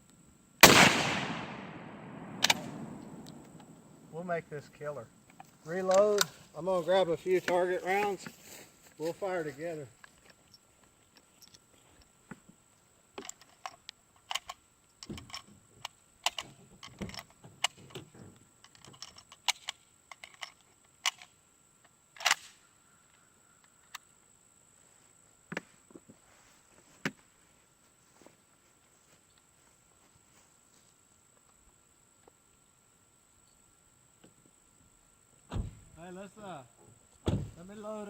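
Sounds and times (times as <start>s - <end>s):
metallic clicks of rifles reloading: 2.2s - 3.8s, 5.7s - 6.4s, 13.2s - 18.0s, 18.6s - 21.3s, 22.2s - 22.5s.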